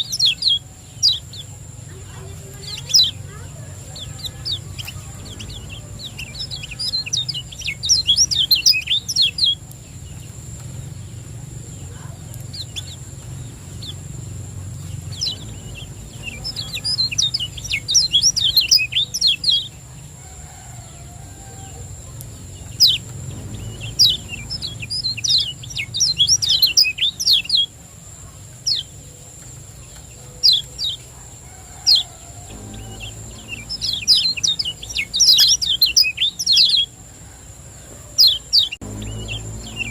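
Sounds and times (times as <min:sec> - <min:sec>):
steady low hum: 0:00.0 - 0:20.2, 0:20.8 - 0:37.7, 0:38.6 - 0:39.9
bird chirping: 0:00.0 - 0:20.8, 0:21.4 - 0:37.0, 0:37.9 - 0:39.9
thin high whine: 0:32.3 - 0:36.1, 0:38.8 - 0:39.9.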